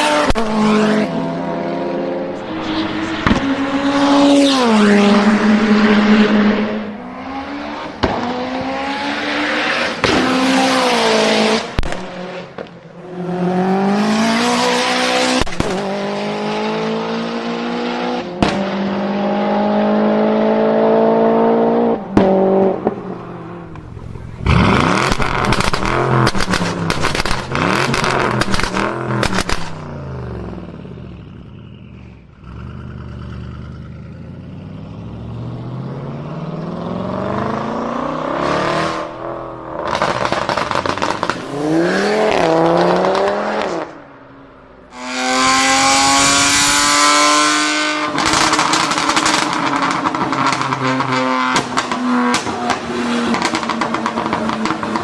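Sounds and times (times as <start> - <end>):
car engine revving: 0.0 - 55.0
exhaust bangs and pops: 2.7 - 3.6, 7.9 - 8.4, 10.0 - 10.5, 11.6 - 12.8, 15.3 - 15.9, 18.4 - 18.8, 23.7 - 29.9, 39.8 - 41.6, 48.1 - 55.0.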